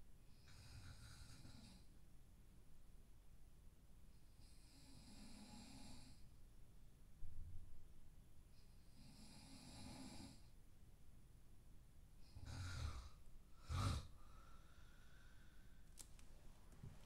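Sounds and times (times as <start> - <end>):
person snoring softly: 0.4 - 1.9, 4.4 - 6.2, 8.6 - 10.5, 12.2 - 15.8.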